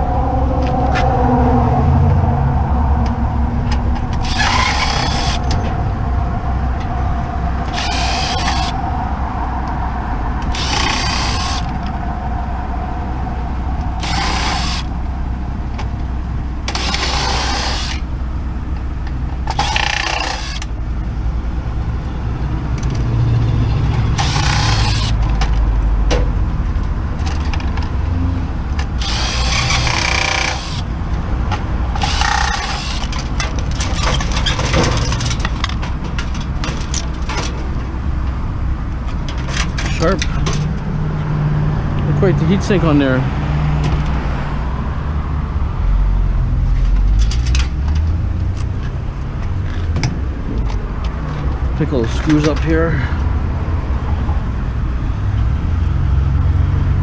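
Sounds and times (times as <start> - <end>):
low engine rumble: 0.0 - 57.0
power drill whirring: 4.2 - 5.6, 7.6 - 8.8, 10.4 - 11.8, 13.9 - 14.9, 16.7 - 18.1, 19.5 - 20.7, 24.1 - 25.3, 29.0 - 30.9, 31.9 - 34.6.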